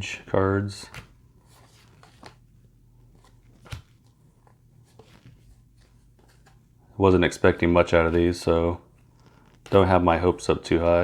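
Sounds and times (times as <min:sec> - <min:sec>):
trading cards flipped through: 0:00.9 - 0:06.7.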